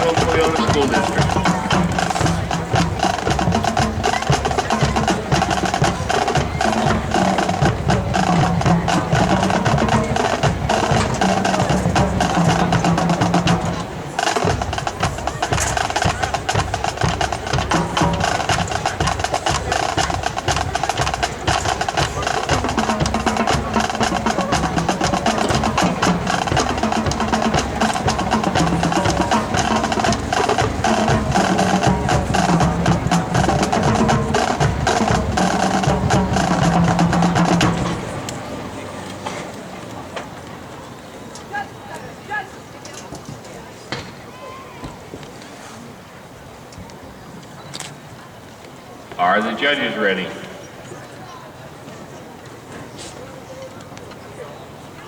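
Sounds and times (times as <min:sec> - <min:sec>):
snare drum and rim clicks: 0:00.0 - 0:38.1
tuned drums: 0:00.0 - 0:38.7.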